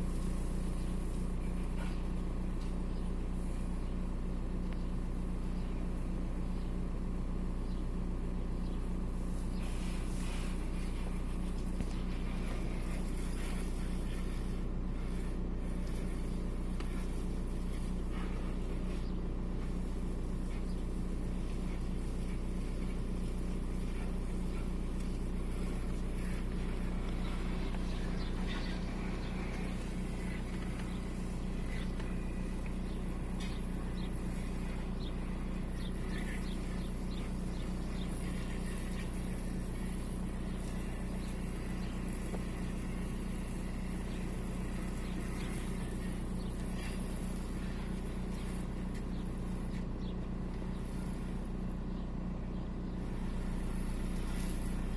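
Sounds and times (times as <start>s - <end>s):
diesel engine running with misfire: 0.0s - 54.9s.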